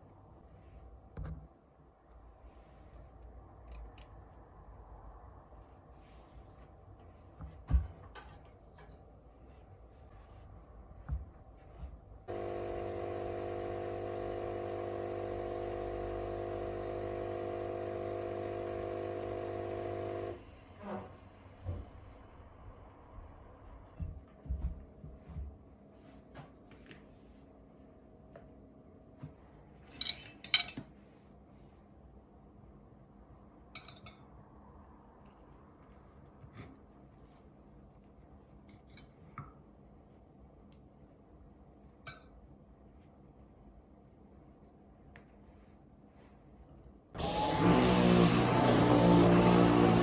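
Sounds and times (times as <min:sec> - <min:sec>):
appliance motor humming: 0:12.3 - 0:20.4, 0:47.2 - 0:50.0
tableware clinking: 0:29.9 - 0:30.8.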